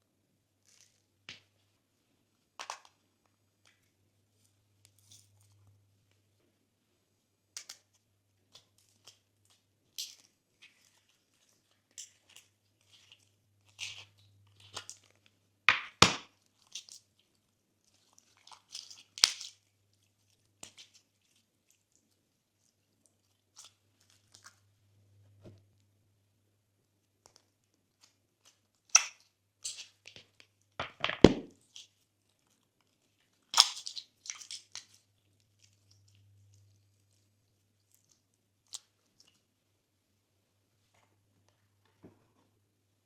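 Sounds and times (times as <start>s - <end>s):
slime crackling and popping: 33.4s - 35.0s.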